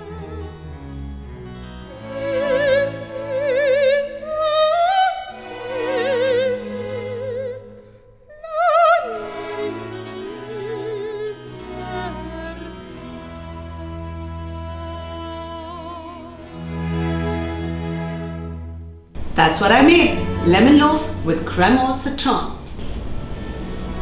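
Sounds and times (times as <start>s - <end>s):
classical instrumental accompaniment: 0.0s - 24.0s
soprano singing operatic notes: 1.9s - 17.4s, 19.4s - 22.4s.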